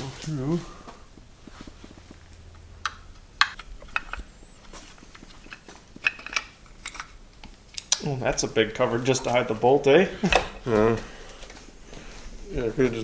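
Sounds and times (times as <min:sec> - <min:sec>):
hand tools clicking and tapping: 0:00.8 - 0:08.5, 0:10.2 - 0:11.7.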